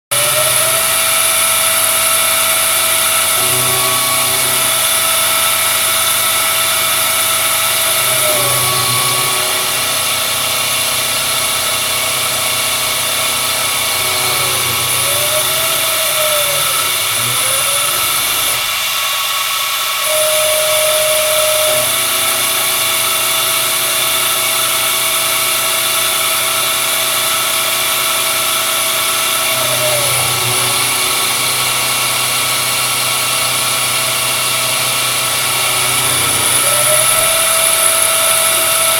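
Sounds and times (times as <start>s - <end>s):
milling machine motor whine: 0.1s - 38.9s.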